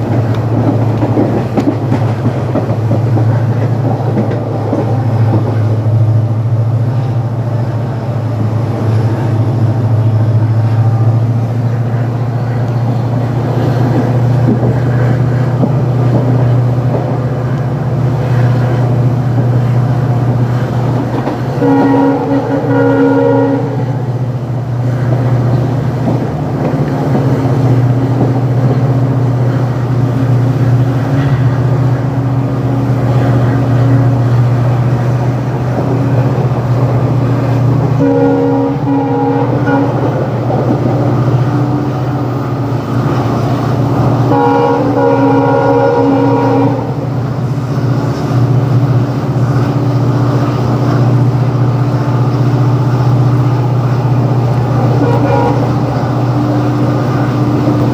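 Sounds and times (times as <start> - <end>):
diesel locomotive running drone: 0.0 - 57.9
locomotive horn blast: 21.5 - 24.1, 38.0 - 40.3, 44.2 - 47.1, 54.8 - 56.1.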